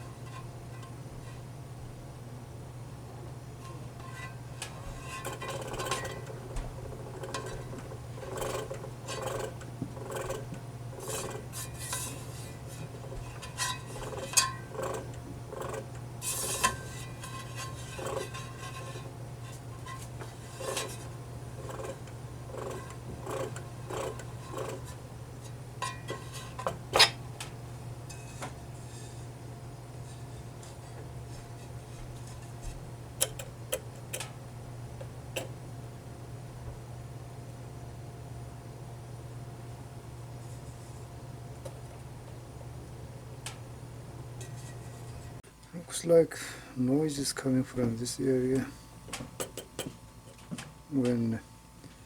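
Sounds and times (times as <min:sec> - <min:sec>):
steady low hum: 0:00.0 - 0:52.0
turntable metallic rattle: 0:03.7 - 0:27.2.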